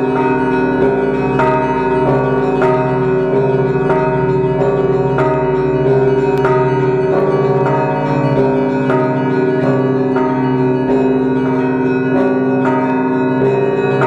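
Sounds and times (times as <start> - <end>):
church bells ringing: 0.0 - 14.0.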